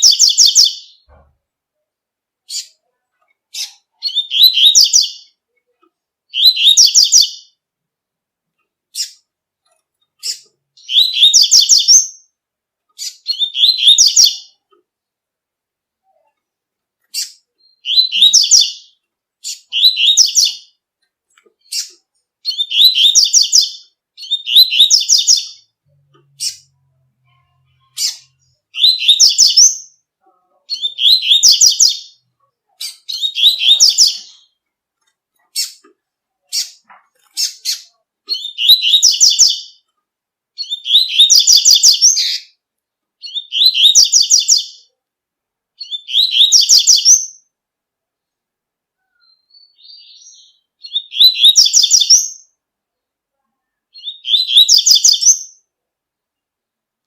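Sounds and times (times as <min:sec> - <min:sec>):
bird singing high phrases: 0:00.0 - 0:01.2, 0:02.4 - 0:07.6, 0:08.9 - 0:09.3, 0:10.1 - 0:14.8, 0:17.0 - 0:20.8, 0:21.6 - 0:34.6, 0:35.4 - 0:39.9, 0:40.6 - 0:42.6, 0:43.2 - 0:45.0, 0:45.8 - 0:47.6, 0:49.0 - 0:52.6, 0:53.6 - 0:55.7.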